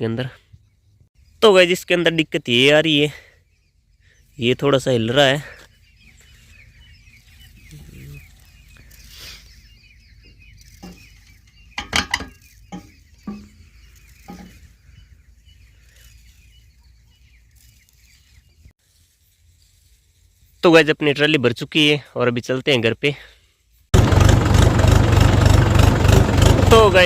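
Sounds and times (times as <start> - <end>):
chickens clucking: 6.7 - 15.2.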